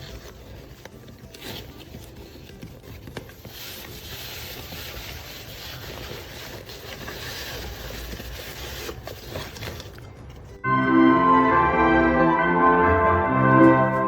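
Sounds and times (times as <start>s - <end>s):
paper rustling: 0.0s - 10.6s.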